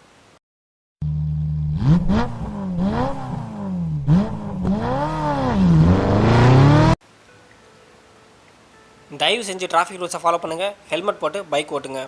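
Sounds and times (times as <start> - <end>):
engine revving: 1.0 - 7.0.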